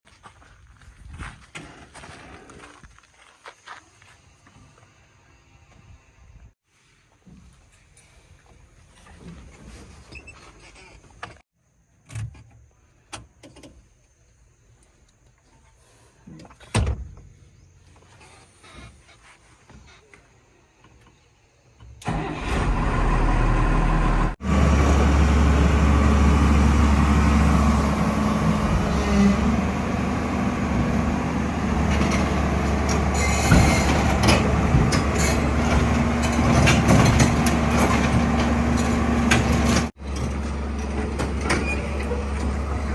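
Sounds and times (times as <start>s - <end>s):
excavator diesel engine humming: 22.0s - 42.9s.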